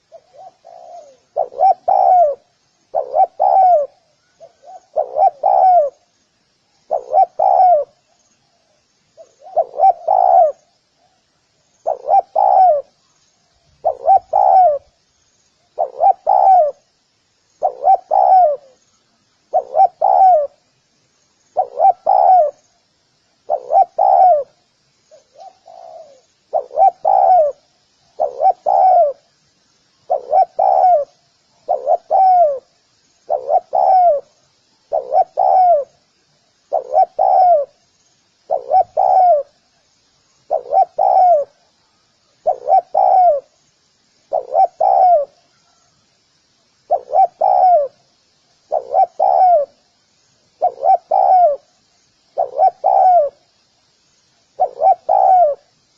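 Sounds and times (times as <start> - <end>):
dove cooing: 0.0 - 6.1, 6.9 - 8.0, 9.2 - 11.2, 11.8 - 13.0, 13.8 - 15.0, 15.7 - 16.9, 17.6 - 18.8, 19.5 - 20.6, 21.6 - 22.6, 23.5 - 29.3, 30.0 - 32.7, 33.3 - 36.0, 36.7 - 37.8, 38.5 - 39.6, 40.5 - 41.6, 42.4 - 43.6, 44.3 - 45.9, 46.9 - 48.0, 48.7 - 49.8, 50.6 - 51.8, 52.4 - 53.4, 54.6 - 55.7.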